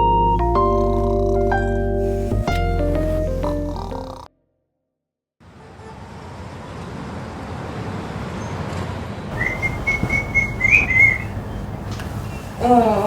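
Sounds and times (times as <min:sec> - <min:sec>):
steady background rushing noise: 0:06.0 - 0:13.0.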